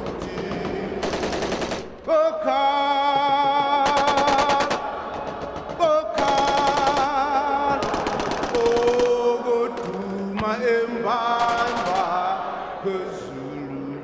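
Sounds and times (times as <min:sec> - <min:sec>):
machine-gun fire: 0:00.4 - 0:02.1, 0:03.8 - 0:10.4, 0:11.4 - 0:12.2.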